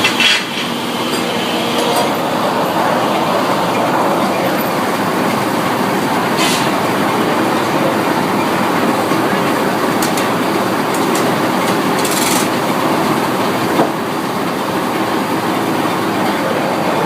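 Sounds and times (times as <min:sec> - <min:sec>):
sawmill machinery running: 0:00.0 - 0:17.0.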